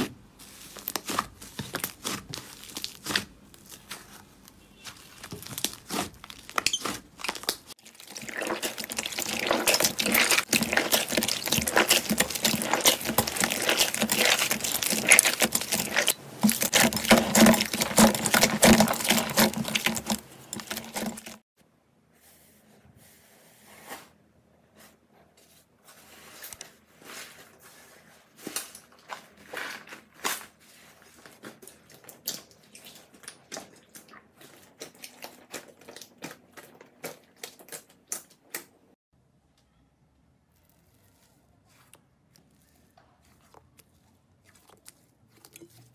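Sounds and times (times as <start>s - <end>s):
slime crackling when squeezed: 4.8s - 21.4s.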